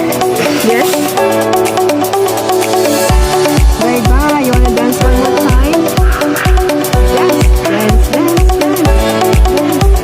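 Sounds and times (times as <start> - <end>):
synth melody: 0.0 - 10.0
heavy kick drum: 3.1 - 10.0.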